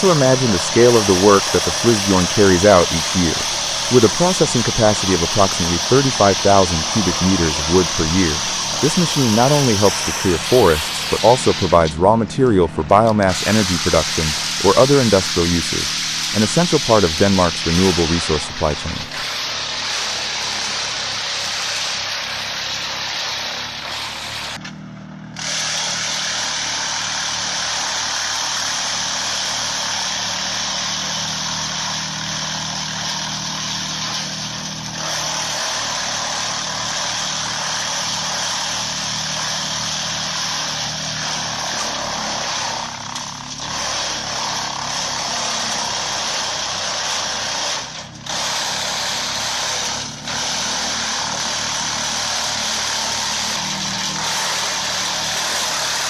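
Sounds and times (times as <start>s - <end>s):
wood being shredded: 0.0s - 56.0s
wood chipper engine drone: 0.0s - 56.0s.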